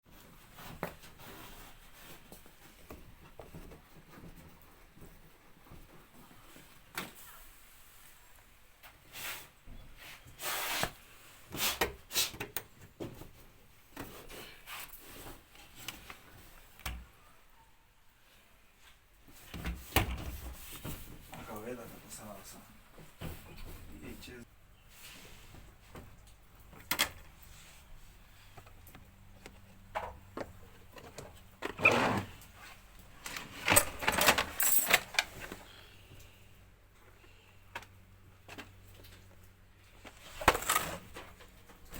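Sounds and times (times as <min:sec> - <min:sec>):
dryer scraping and rubbing: 0:31.0 - 0:34.3.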